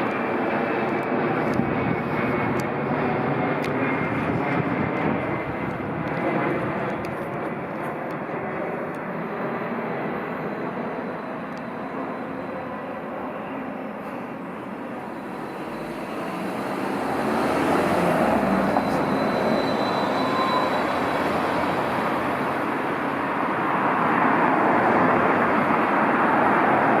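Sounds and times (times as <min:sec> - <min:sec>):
road traffic passing: 0:13.8 - 0:27.0.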